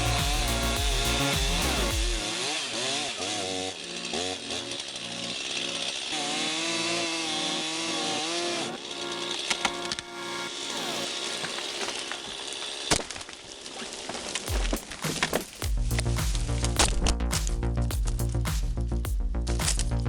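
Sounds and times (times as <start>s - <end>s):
heavy low rumble: 0.0s - 2.2s, 15.7s - 20.0s
chainsaw revving: 0.0s - 8.7s.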